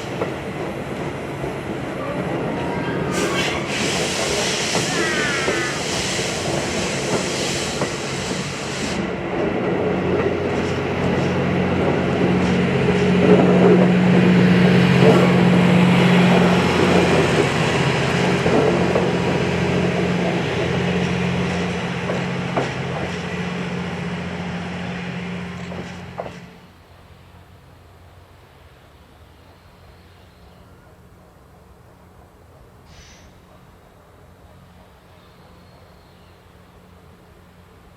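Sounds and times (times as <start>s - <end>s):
steam train rumbling past: 0.0s - 37.9s
train wheels clicking: 3.1s - 24.0s, 25.2s - 26.6s.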